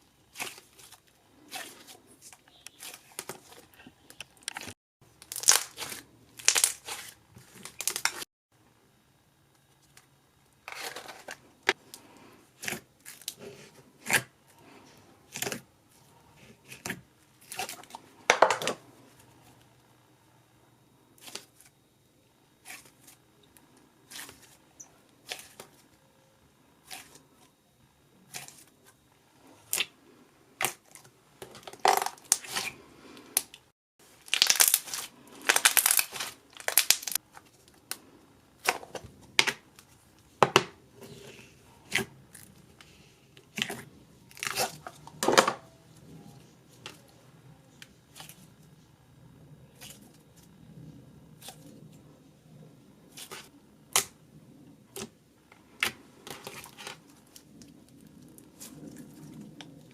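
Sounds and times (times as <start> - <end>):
slime crackling and popping: 4.5 - 8.2, 34.2 - 37.2.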